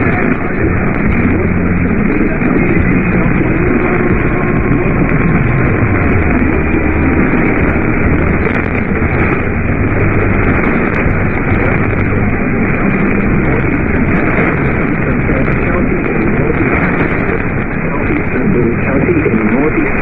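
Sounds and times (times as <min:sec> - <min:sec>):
radio static hiss: 0:00.0 - 0:20.0
faint voice under static: 0:17.8 - 0:20.0.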